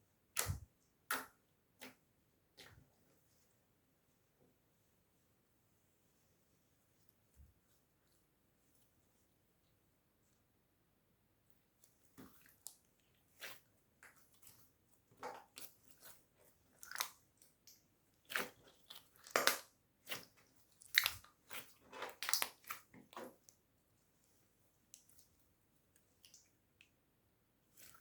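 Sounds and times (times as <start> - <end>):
slime squelching by hand: 0.4 - 3.0, 11.7 - 23.6, 27.7 - 28.0.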